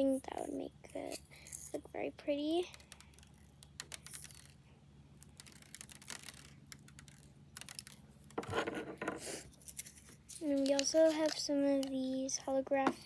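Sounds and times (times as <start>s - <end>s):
sprinkles rattling in container: 2.8s - 4.6s, 5.2s - 8.0s.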